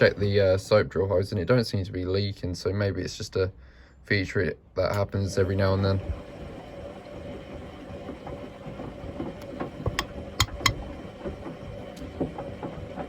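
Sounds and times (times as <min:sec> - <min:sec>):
washing machine motor whine: 0:00.0 - 0:01.3, 0:05.0 - 0:13.0
drum knocking: 0:09.2 - 0:13.0.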